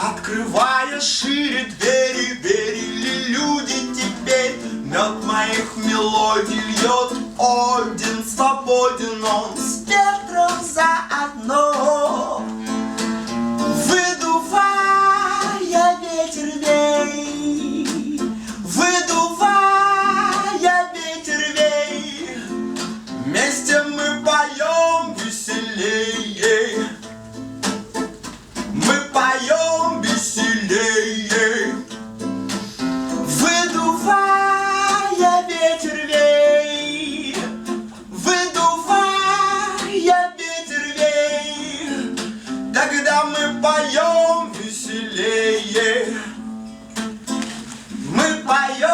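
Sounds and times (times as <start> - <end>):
person singing: 0.0 - 27.1, 28.7 - 32.0, 32.6 - 46.4, 48.0 - 48.9
acoustic guitar strumming: 0.0 - 48.9.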